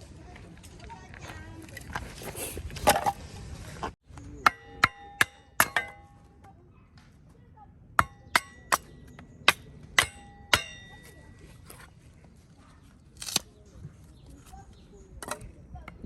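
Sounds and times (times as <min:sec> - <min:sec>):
iron parts clinking together: 0:04.4 - 0:06.3, 0:08.0 - 0:11.2.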